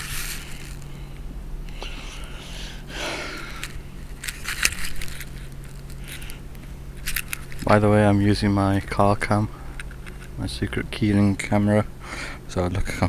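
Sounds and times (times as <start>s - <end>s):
handling noise rustle: 0.0s - 0.9s, 3.6s - 7.9s.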